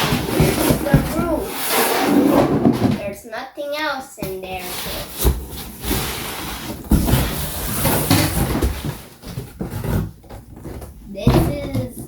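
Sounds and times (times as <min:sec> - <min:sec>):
plastic and cardboard rustling: 0:00.0 - 0:03.2, 0:04.2 - 0:12.0.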